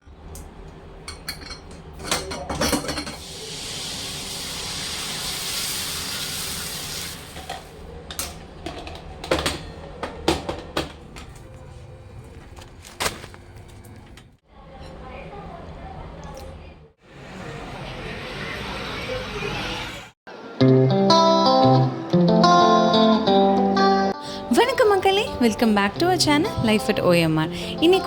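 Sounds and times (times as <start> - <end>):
utensils and pots clinking: 1.0 - 3.9, 6.8 - 11.4.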